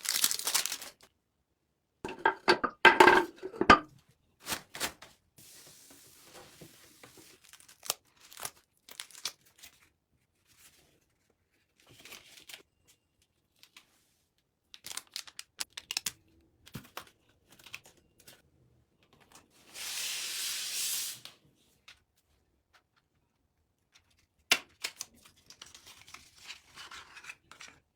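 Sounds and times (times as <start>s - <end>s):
plastic and paper rustling: 0.0s - 1.1s, 4.4s - 14.0s, 14.7s - 18.4s, 24.0s - 27.9s.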